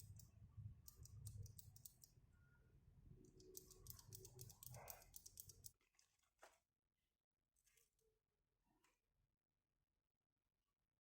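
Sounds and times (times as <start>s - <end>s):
plastic accessories clicking: 3.4s - 5.7s.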